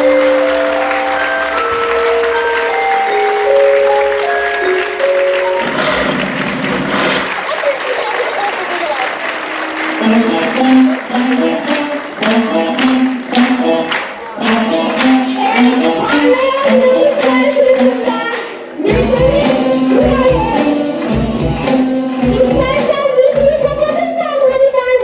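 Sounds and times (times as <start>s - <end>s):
melody over percussion beat: 0.0s - 7.3s, 9.4s - 18.3s, 18.9s - 24.3s
music with heavy bass beat: 18.9s - 23.9s.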